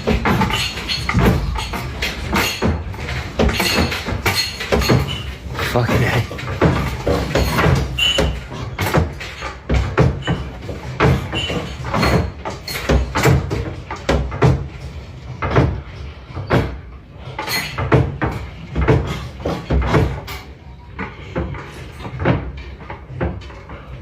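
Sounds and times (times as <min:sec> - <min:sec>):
loud knocks and bangs: 0:00.0 - 0:16.8.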